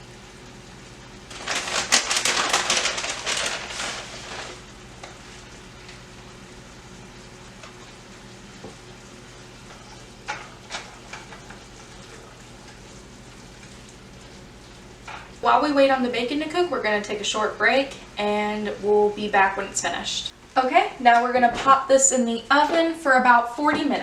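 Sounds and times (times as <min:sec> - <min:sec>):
plastic bag crackling: 0:01.1 - 0:05.7.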